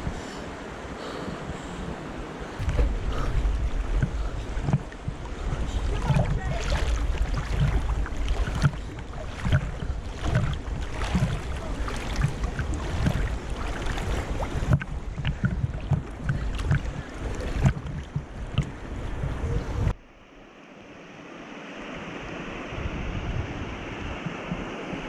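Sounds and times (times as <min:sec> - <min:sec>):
wind buffeting microphone: 0:00.0 - 0:20.0, 0:22.6 - 0:25.0
water splashing: 0:01.1 - 0:20.0.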